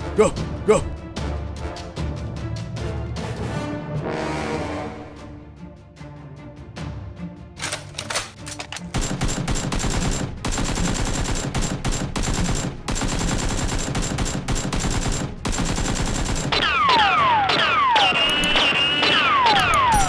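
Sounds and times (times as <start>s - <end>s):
automatic gunfire: 9.0s - 16.8s.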